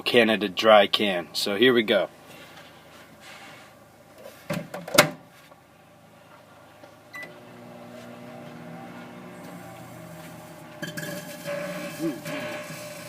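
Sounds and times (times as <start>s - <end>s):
microwave oven humming: 6.9s - 13.0s.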